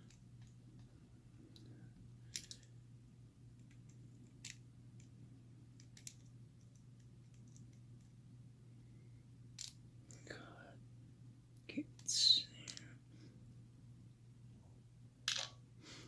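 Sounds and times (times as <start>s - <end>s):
steady low hum: 0.0s - 16.0s
small metal tools clicking: 2.3s - 2.7s.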